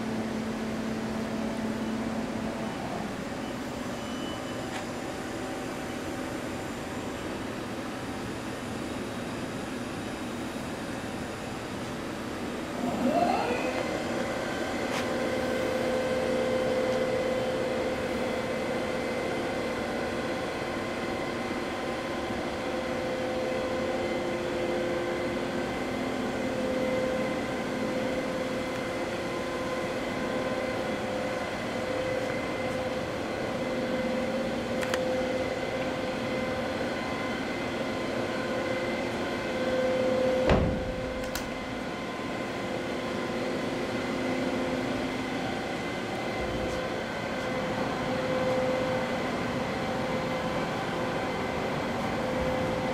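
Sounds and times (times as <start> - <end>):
machine hum and whine: 0.0 - 52.9
rising machine whine: 12.5 - 21.7.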